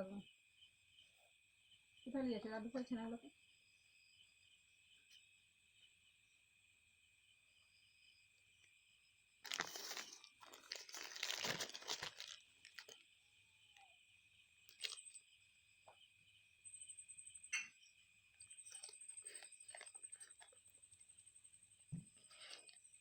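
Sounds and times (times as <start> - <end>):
cat crunching and chewing: 9.4 - 13.0, 14.7 - 15.2, 18.5 - 21.0, 22.2 - 22.8.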